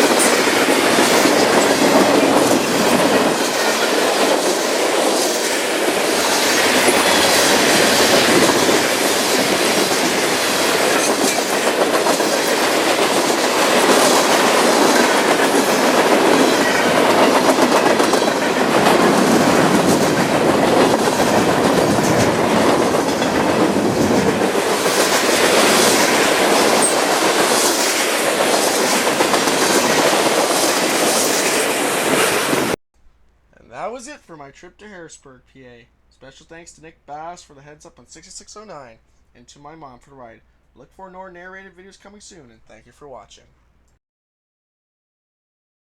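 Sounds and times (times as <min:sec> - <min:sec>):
freight train wheels clattering: 0:00.0 - 0:32.8.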